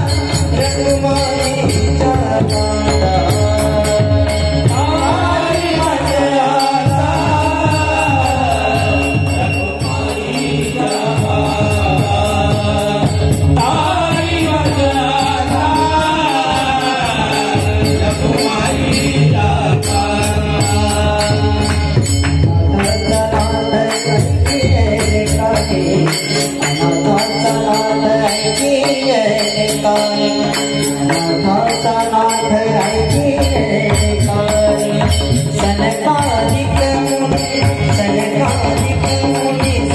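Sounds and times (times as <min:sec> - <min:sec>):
steady drum beat: 0:00.0 - 0:27.6
small cymbals jingling: 0:00.0 - 0:39.9.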